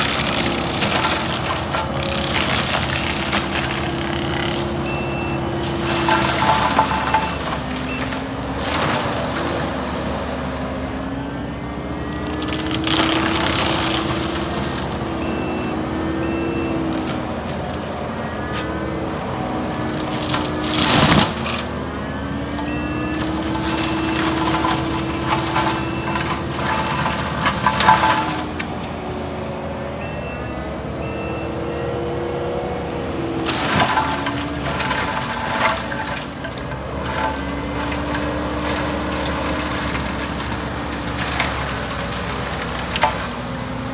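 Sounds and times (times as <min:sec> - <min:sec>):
wood cracking and crushing: 0:00.0 - 0:30.2, 0:31.6 - 0:43.9
engine under heavy load: 0:00.0 - 0:43.9
short beeps: 0:29.8 - 0:32.0.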